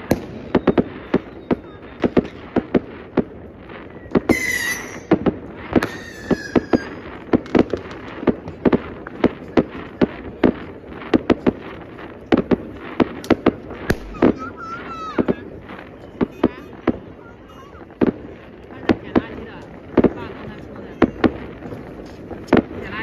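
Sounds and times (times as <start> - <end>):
firework whistles: 0.0 - 8.0, 12.6 - 22.4
firecrackers banging: 0.0 - 23.0.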